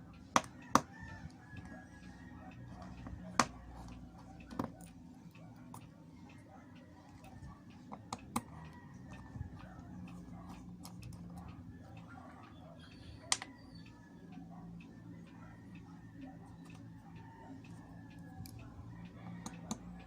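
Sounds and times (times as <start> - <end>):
tools and plastic parts clicking: 0.2 - 5.9.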